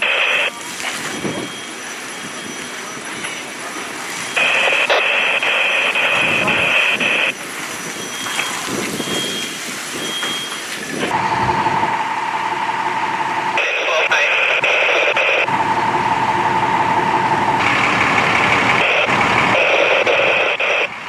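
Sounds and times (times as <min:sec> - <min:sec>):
radio static with high tone: 0:00.0 - 0:09.5, 0:13.4 - 0:15.6, 0:17.2 - 0:21.0
steady background noise: 0:00.0 - 0:21.0
steady radio tone: 0:00.0 - 0:21.0.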